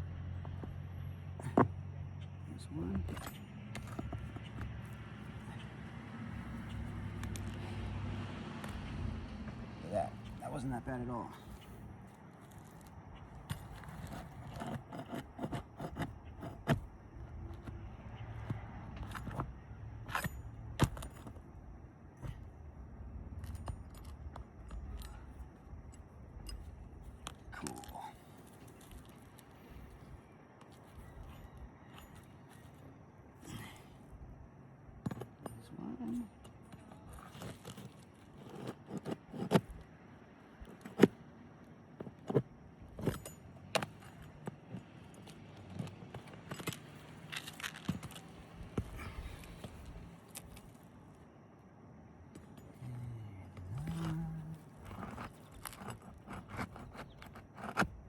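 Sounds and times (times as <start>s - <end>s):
metal clicks and knocks: 1.4s - 5.8s
light scraping: 1.4s - 21.4s, 35.1s - 41.2s, 52.3s - 58.0s
tool prying nails clicking: 12.4s - 17.8s, 54.8s - 58.0s.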